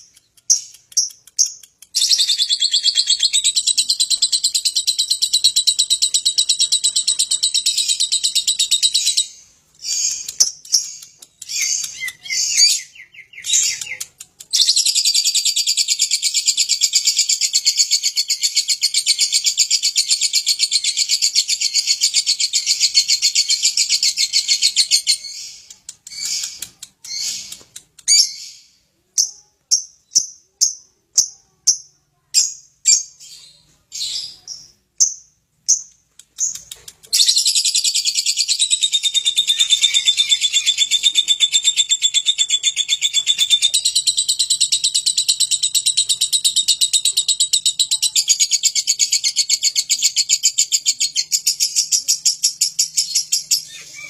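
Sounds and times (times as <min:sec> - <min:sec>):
lovebird chattering trill: 0:34.1 - 0:54.0.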